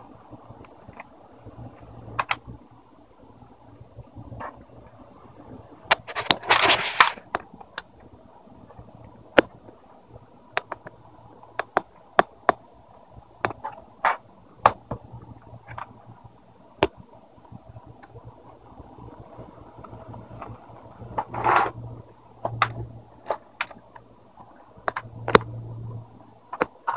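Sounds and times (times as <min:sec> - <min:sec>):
scraping rustle: 0:06.0 - 0:07.2.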